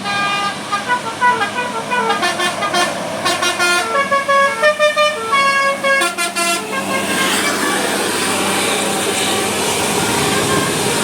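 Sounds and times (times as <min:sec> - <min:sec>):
bus horn playing a quick tune: 0:00.0 - 0:07.8, 0:09.2 - 0:11.0.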